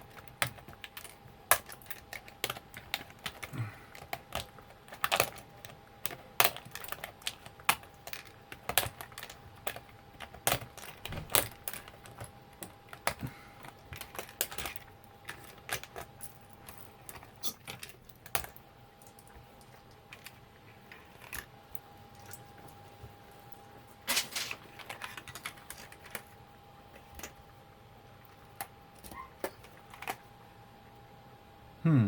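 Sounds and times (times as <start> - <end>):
plastic parts clicking and tapping: 0.0 - 21.5, 24.1 - 26.3
plastic parts clattering: 0.1 - 18.6, 24.0 - 26.3.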